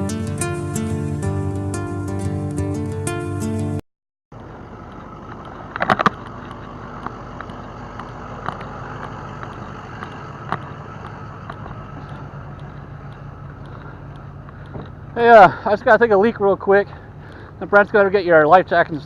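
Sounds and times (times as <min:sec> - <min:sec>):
motor humming: 0:04.4 - 0:15.6.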